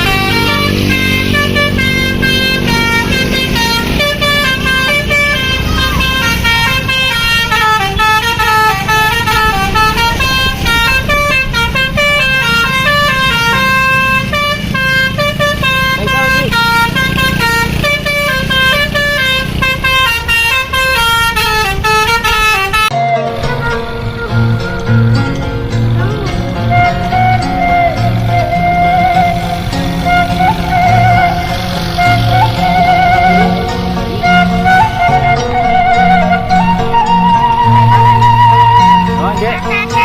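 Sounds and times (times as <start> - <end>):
low vehicle rumble: 0.0 - 40.0
multi-tone air horn tune: 0.0 - 40.0.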